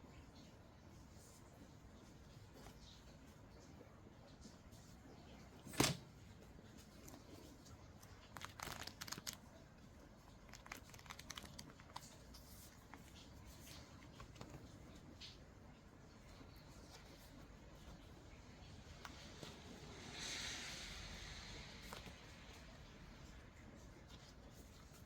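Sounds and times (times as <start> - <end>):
paper rustling and crinkling: 6.6 - 15.4.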